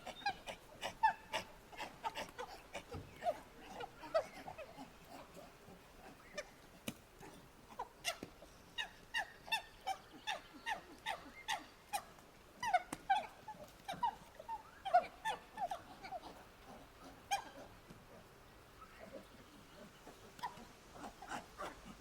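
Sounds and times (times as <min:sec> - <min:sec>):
monkey calling: 0:00.0 - 0:06.7.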